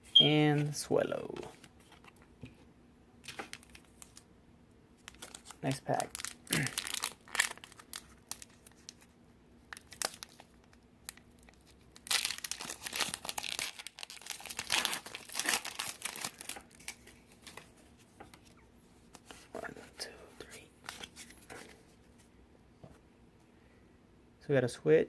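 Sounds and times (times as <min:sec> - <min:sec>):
foil wrapper crinkling and tearing: 0:03.2 - 0:04.2, 0:05.0 - 0:09.1, 0:09.7 - 0:17.7.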